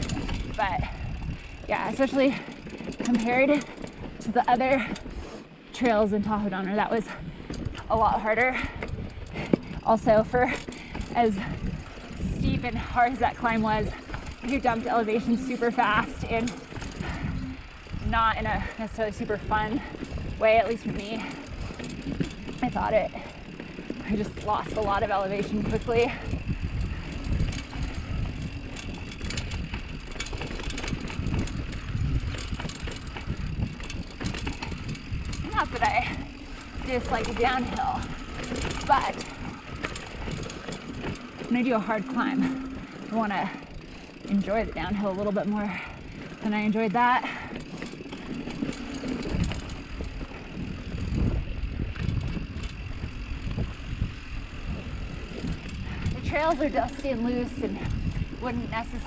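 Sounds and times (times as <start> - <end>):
bike clicks and rattles: 0.0 - 59.0
wind rumble on microphone: 0.0 - 59.0
wind on microphone: 11.4 - 20.5, 49.2 - 59.0
tyres rolling over dirt and rocks: 17.7 - 42.1, 43.0 - 59.0.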